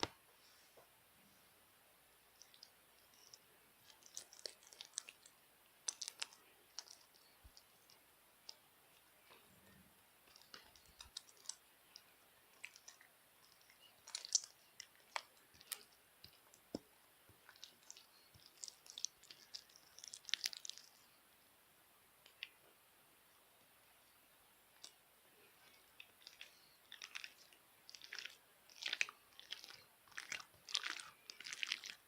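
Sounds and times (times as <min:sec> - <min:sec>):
slime clicking and crackling: 0:02.4 - 0:08.7, 0:10.2 - 0:21.1, 0:25.6 - 0:32.0.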